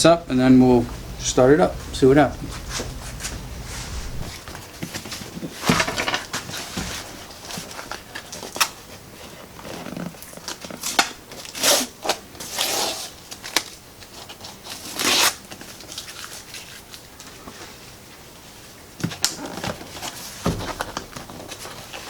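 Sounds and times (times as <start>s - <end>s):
rustling scrubbing bursts: 0.8s - 4.5s.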